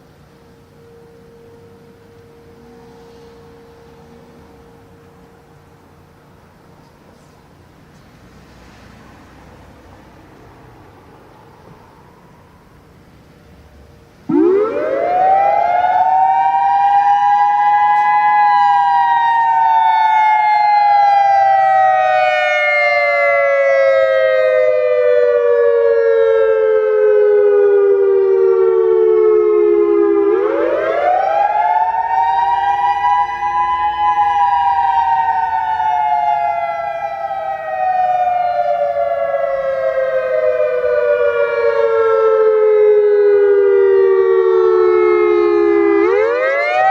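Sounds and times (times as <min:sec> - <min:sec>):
electronic warning siren: 0:00.0 - 0:06.8, 0:14.3 - 0:46.9.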